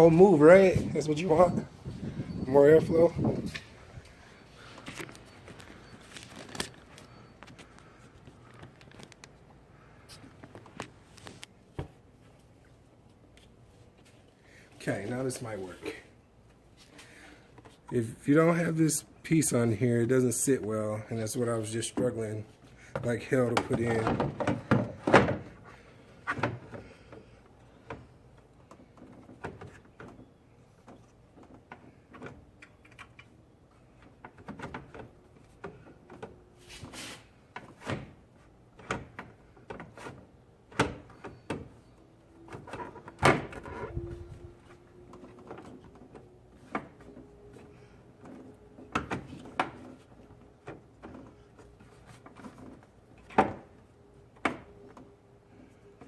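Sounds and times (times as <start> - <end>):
hard plastic parts knocking and rattling: 22.9 - 25.6.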